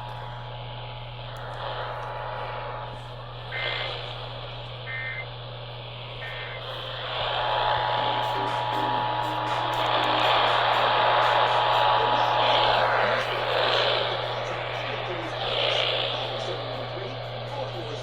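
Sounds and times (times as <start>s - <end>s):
radio static: 0.0s - 18.0s
steady hum: 0.0s - 18.0s
two-tone digital squawks: 3.4s - 5.3s, 6.1s - 16.8s
thin whistle: 4.8s - 5.3s.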